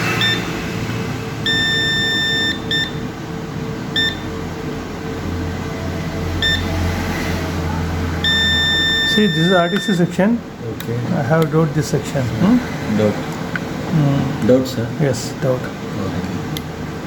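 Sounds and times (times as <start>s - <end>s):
multimeter continuity beeps: 0.0s - 0.5s, 1.4s - 3.1s, 3.9s - 4.3s, 6.4s - 6.7s, 8.2s - 10.2s.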